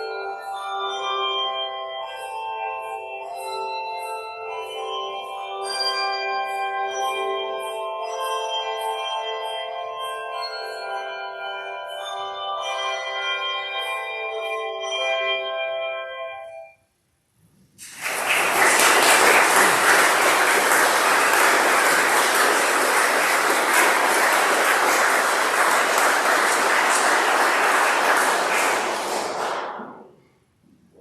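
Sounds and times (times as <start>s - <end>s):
audience applauding: 17.8s - 29.9s.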